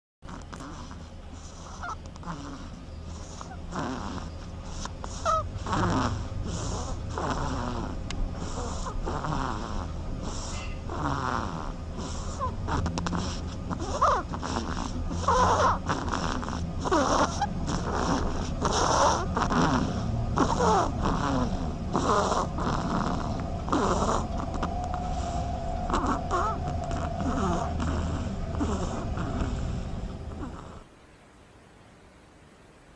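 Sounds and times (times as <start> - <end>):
ducks snoring: 0.2 - 31.0.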